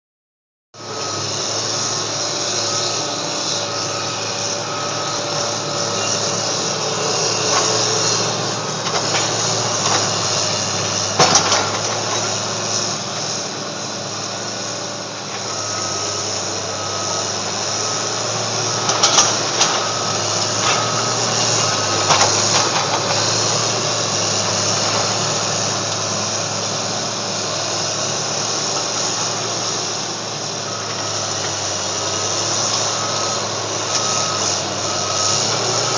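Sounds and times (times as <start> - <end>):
bulldozer diesel engine: 0.8 - 35.9
high beep: 15.5 - 22.7.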